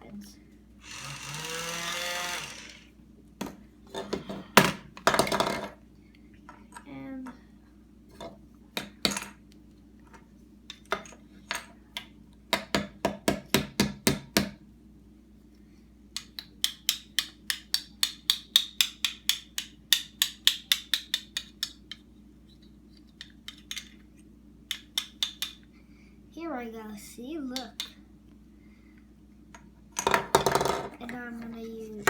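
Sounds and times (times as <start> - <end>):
plastic toy tools clicking: 0.8 - 2.8, 24.7 - 25.6.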